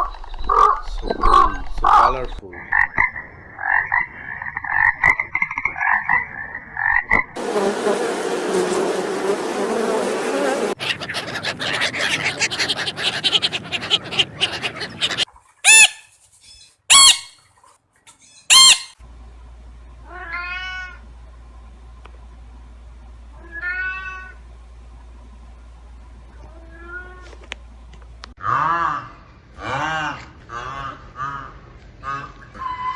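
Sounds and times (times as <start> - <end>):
frog croaking: 0.5 - 7.3
rising and falling animal calls: 5.7 - 17.4, 18.4 - 19.0
short loud animal calls: 10.4 - 16.1, 16.9 - 17.4, 18.5 - 19.0.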